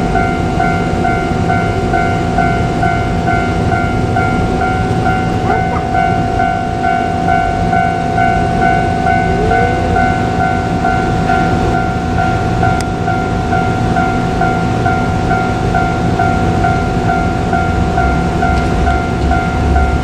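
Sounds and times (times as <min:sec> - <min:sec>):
diesel railcar running: 0:00.0 - 0:20.0
level crossing bell ringing: 0:00.2 - 0:20.0.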